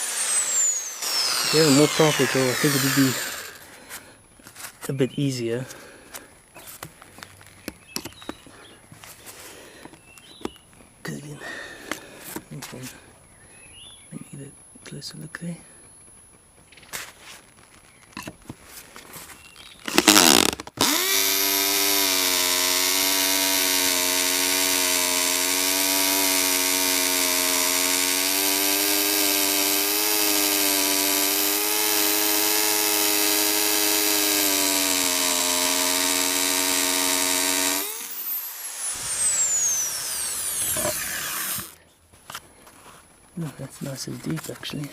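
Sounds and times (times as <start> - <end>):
drill clicks: 0.0 - 3.7, 19.8 - 41.8
electric drill whining: 0.0 - 3.8, 19.8 - 41.8.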